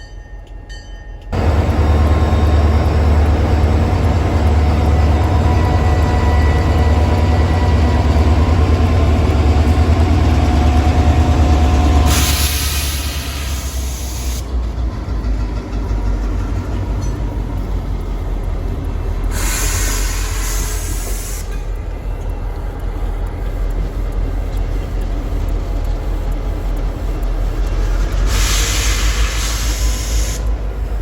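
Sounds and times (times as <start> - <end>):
freight train rumbling on rails: 0.0 - 31.0
burst of hiss: 12.1 - 14.4, 28.3 - 30.5.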